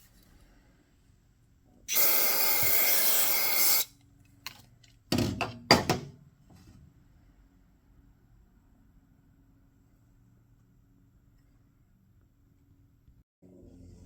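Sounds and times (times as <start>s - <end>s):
pressurized spray hissing: 1.9s - 3.9s.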